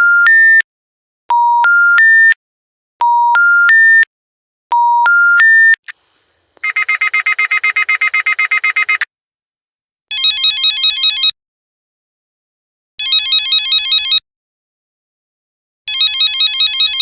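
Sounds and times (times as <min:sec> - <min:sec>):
electronic telephone ringer trilling: 0:06.6 - 0:09.0.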